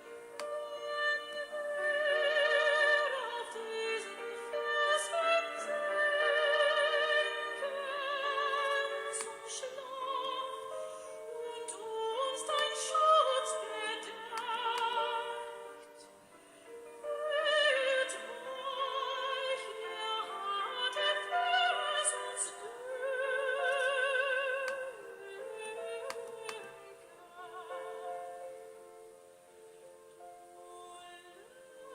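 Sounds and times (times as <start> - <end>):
operatic singing with vibrato: 0.3 - 28.7.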